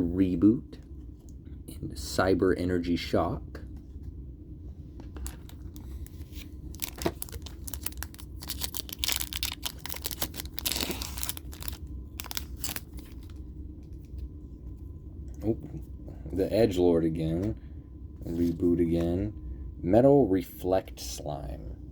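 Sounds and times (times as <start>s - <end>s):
cards being handled: 5.0s - 13.4s
foil wrapper crinkling and tearing: 5.2s - 13.4s.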